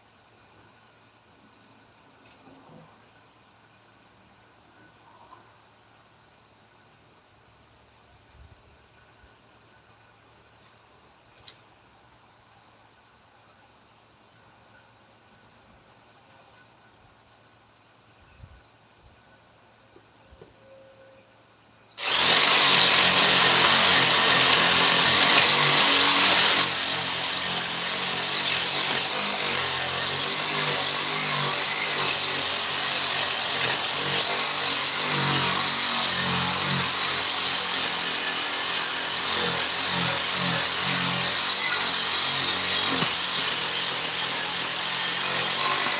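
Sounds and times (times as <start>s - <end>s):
power tool cutting wood: 22.0s - 45.9s.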